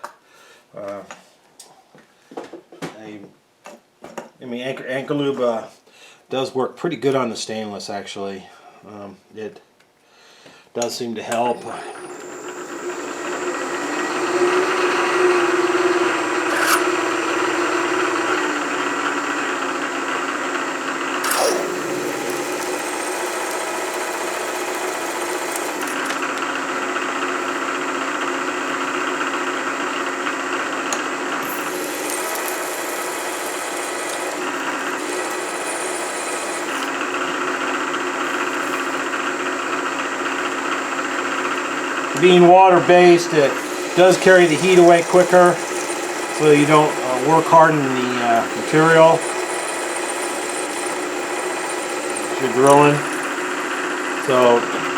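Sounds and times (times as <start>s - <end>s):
drill bit cutting steel: 11.3s - 19.0s, 21.2s - 26.8s, 31.4s - 54.9s
milling machine spindle humming: 11.3s - 19.4s, 21.2s - 29.1s, 31.3s - 54.9s.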